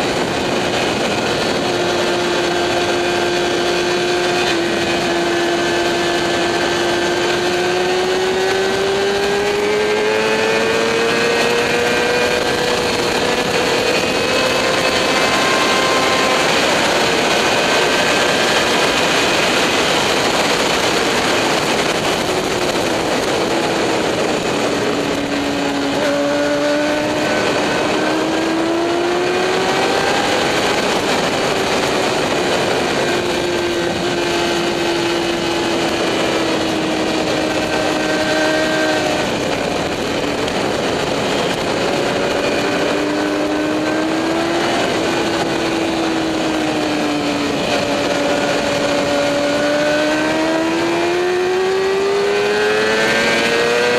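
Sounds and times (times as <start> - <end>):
motorcycle engine revving: 0.0 - 53.9
wind rush: 0.0 - 53.9.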